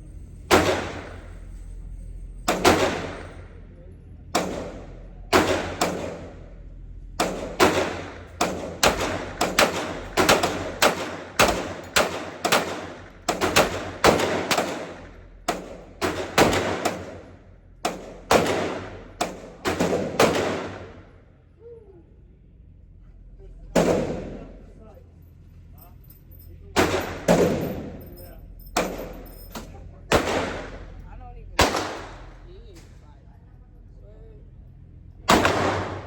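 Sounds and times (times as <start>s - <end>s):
rapid handgun fire: 0.5s - 1.3s, 2.5s - 3.5s, 4.3s - 6.5s, 7.2s - 21.2s, 23.7s - 24.5s, 26.8s - 28.0s, 30.1s - 31.0s, 31.6s - 32.4s, 35.3s - 36.0s.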